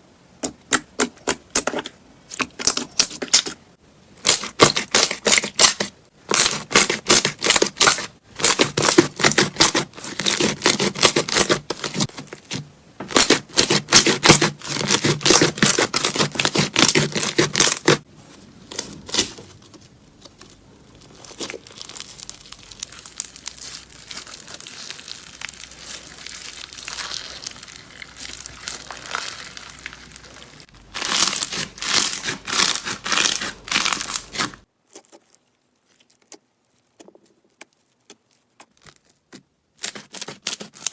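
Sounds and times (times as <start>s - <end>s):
slime squeezed by hand: 21.2s - 39.1s.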